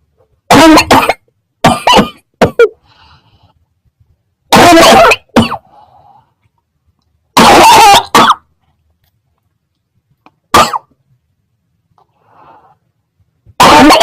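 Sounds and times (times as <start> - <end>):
person coughing loudly: 0.5 - 2.8, 4.5 - 5.7, 7.4 - 8.4, 10.5 - 10.9, 13.6 - 14.0.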